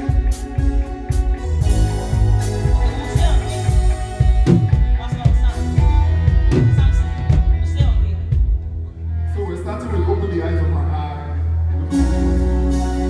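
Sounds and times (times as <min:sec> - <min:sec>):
kick drum hits: 0:00.0 - 0:08.8
steady bass line: 0:00.0 - 0:13.0.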